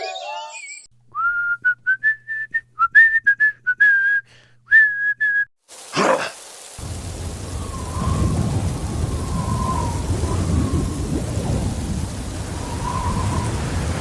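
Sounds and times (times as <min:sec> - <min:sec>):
person whistling a tune: 0:01.1 - 0:05.5.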